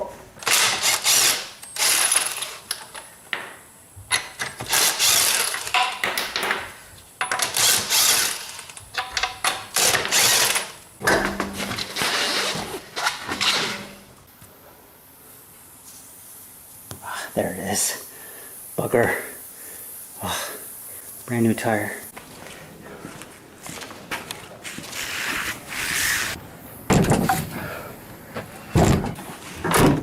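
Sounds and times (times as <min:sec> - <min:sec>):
hand ratchet clicking: 0:07.2 - 0:10.7.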